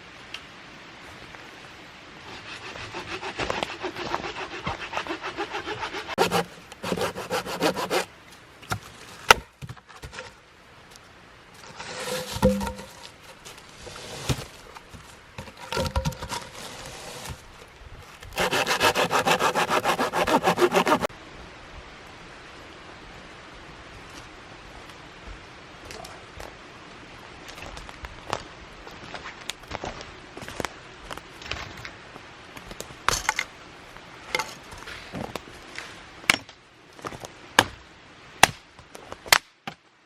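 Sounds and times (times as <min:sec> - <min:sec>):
hand saw cutting wood: 0:02.3 - 0:08.1, 0:11.8 - 0:13.2, 0:15.4 - 0:17.4, 0:18.3 - 0:21.1.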